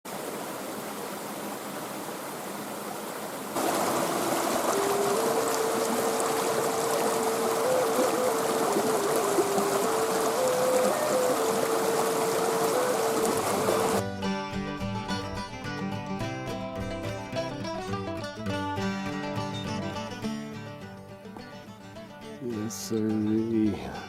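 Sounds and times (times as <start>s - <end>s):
running water rushing: 0.1s - 14.0s
slow melody of long notes: 3.6s - 23.6s.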